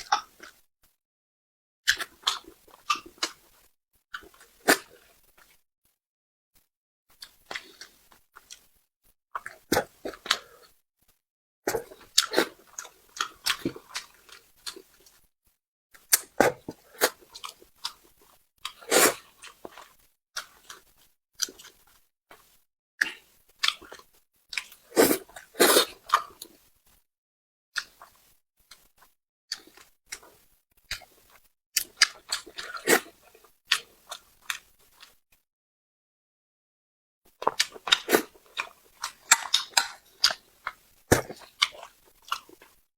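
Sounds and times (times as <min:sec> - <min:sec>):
person chewing and smacking: 0:01.9 - 0:05.6, 0:07.1 - 0:08.8, 0:11.7 - 0:15.2, 0:16.0 - 0:27.0, 0:27.8 - 0:35.2, 0:37.3 - 0:42.8.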